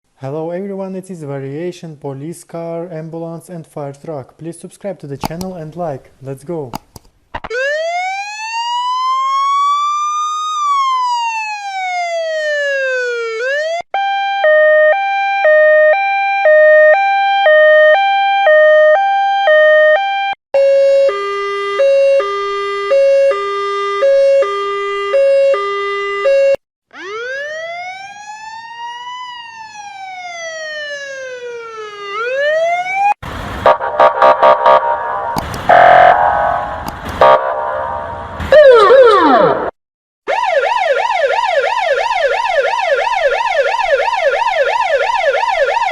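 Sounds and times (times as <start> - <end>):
hi-lo two-tone siren: 7.5 - 39.7, 40.3 - 45.9
siren wailing: 7.5 - 39.7, 40.3 - 45.9
harsh horn blasts: 33.6 - 39.7.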